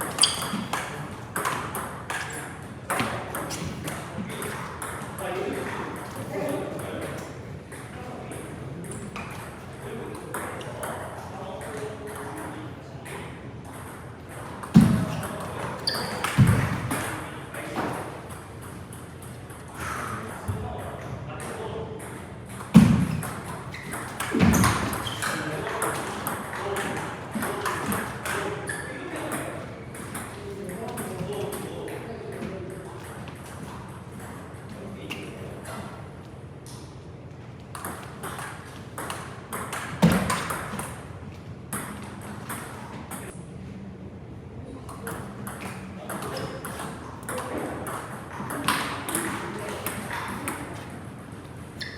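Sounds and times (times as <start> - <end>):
loud table tennis knocks: 0.0 - 6.2, 13.7 - 19.6, 22.0 - 28.5, 37.7 - 43.4
brief high squeak: 0.2 - 0.6, 15.8 - 16.3.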